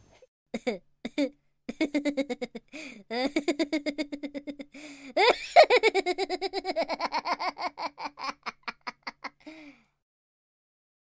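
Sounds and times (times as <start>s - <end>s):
person laughing hard: 0.6s - 9.7s
short breath: 2.7s - 3.0s, 4.8s - 5.2s, 9.4s - 10.0s.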